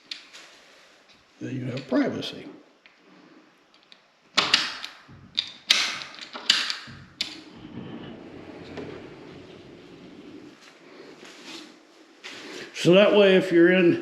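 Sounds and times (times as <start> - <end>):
soft low steady noise: 0.0 - 14.0
door latch clicks and knocks: 4.4 - 9.7.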